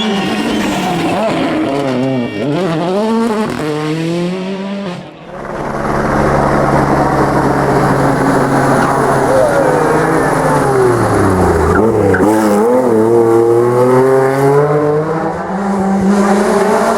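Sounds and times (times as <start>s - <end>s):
rally car engine revving: 0.0s - 16.9s
steady engine drone with noise: 5.1s - 13.2s.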